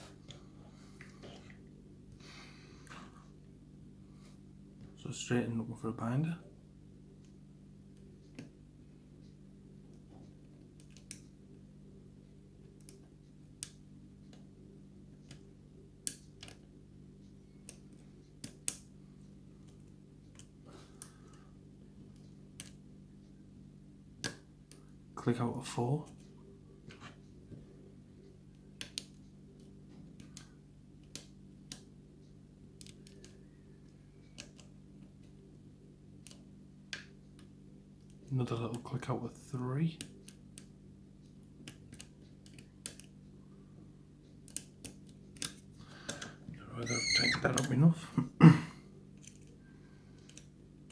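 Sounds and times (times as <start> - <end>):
low steady hum: 0.0 - 50.9.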